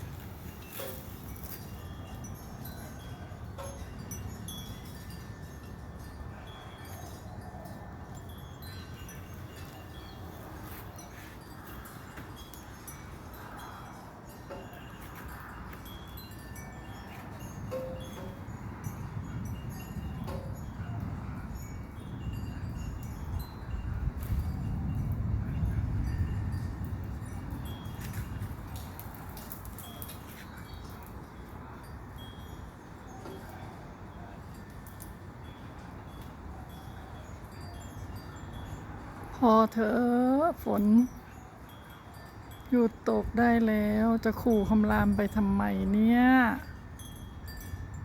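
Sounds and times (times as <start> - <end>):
wind chimes tinkling: 0.0 - 48.0
rain falling: 24.2 - 31.7.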